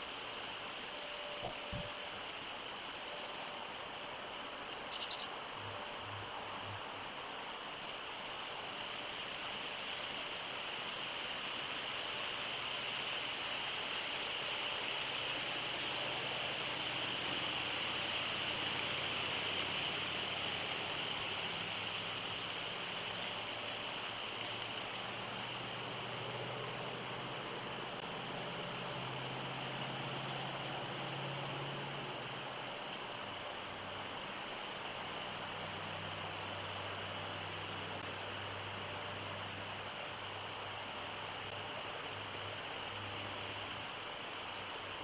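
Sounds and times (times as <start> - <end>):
bird chirp: 2.6 - 4.2, 4.9 - 5.4.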